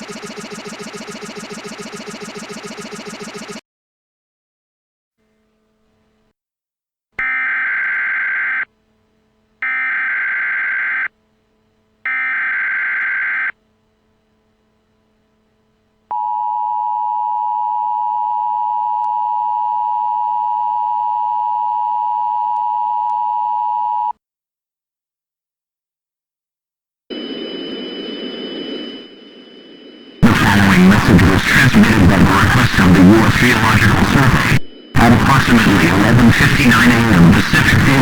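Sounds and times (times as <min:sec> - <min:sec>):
data tone bursts: 0:00.0 - 0:03.6, 0:27.1 - 0:38.0.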